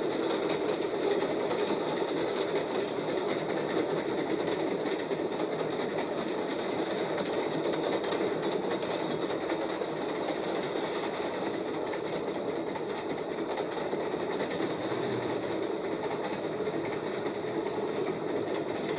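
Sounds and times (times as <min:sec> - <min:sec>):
railcar wheels clanking on track: 0:00.0 - 0:18.9.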